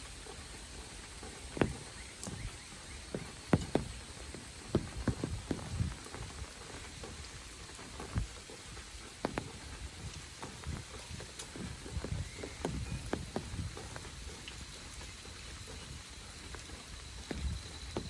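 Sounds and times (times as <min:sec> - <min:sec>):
faint high insect tone: 0:00.0 - 0:18.0
large raindrops tapping: 0:00.0 - 0:18.0
steady hiss of rain: 0:00.0 - 0:18.0.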